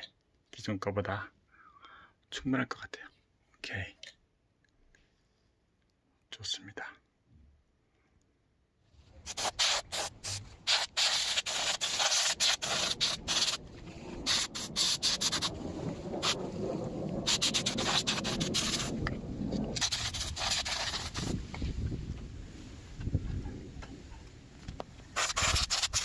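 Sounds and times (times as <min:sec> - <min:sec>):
quick rubbing and scratching: 0:09.2 - 0:13.6, 0:14.2 - 0:16.6, 0:17.2 - 0:19.0, 0:19.7 - 0:21.5, 0:25.2 - 0:26.0
low rough rubbing noise: 0:11.0 - 0:21.8.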